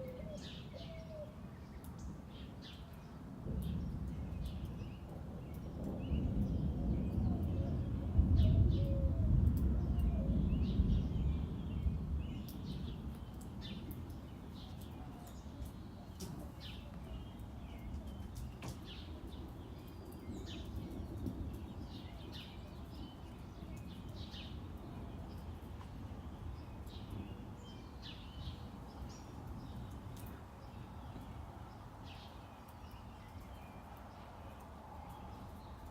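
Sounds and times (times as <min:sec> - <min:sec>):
small birds chirping: 0:09.9 - 0:35.9.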